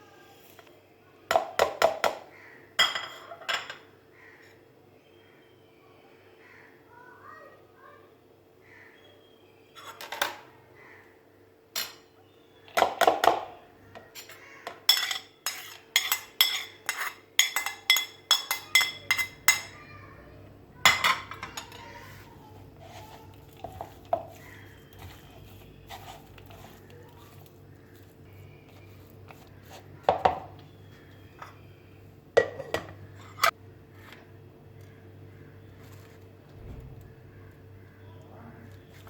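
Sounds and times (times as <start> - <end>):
metal utensils clinking on dish: 2.8 - 3.9, 14.1 - 19.8, 20.9 - 22.1.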